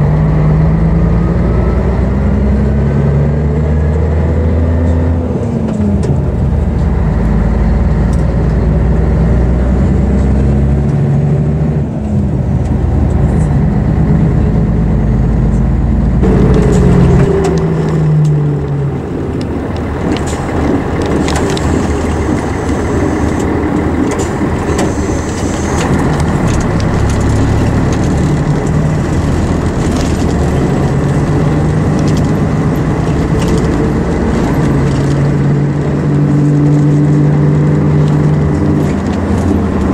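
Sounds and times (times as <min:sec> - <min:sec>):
bus diesel engine running: 0:00.0 - 0:39.9
clicks and rattles: 0:16.5 - 0:35.7.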